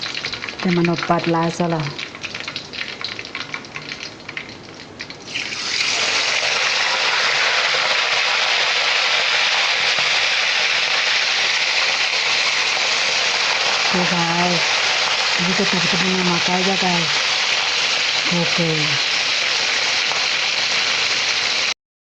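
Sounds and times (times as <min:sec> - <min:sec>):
food crackling in hot oil: 0:00.0 - 0:21.8
loud steady hiss: 0:05.4 - 0:21.8.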